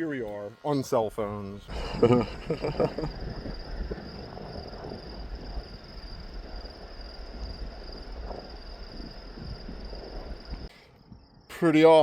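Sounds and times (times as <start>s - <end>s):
crickets trilling: 0.0s - 12.0s
wind rumbling on microphone: 1.0s - 12.0s.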